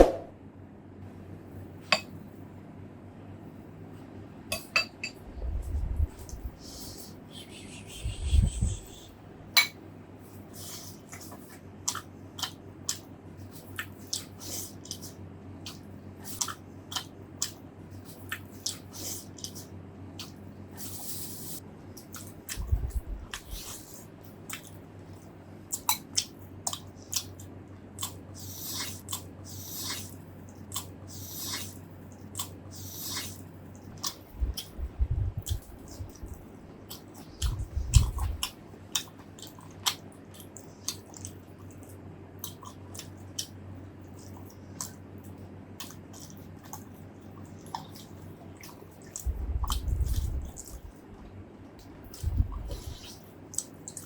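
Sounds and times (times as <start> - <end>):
chewing and biting: 25.7 - 51.0, 51.8 - 54.0.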